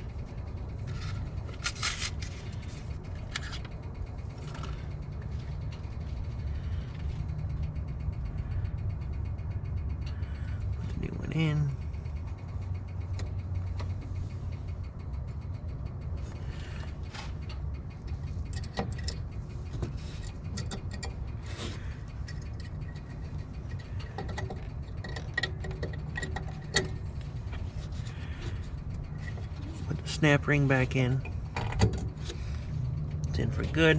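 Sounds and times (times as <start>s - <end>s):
steady low hum: 0.0s - 33.9s
clicks and rattles of bulb and clip: 0.8s - 3.8s.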